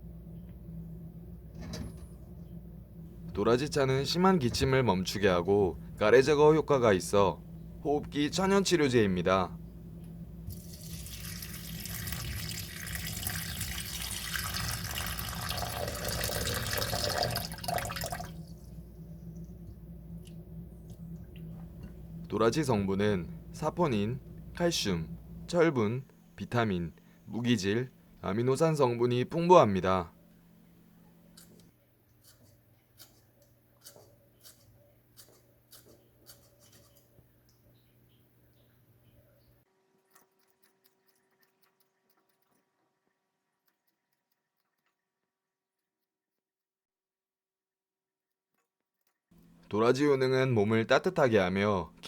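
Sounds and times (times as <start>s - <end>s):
steady low hum: 0.0s - 40.2s, 49.4s - 52.0s
water running from a tap: 10.5s - 18.6s.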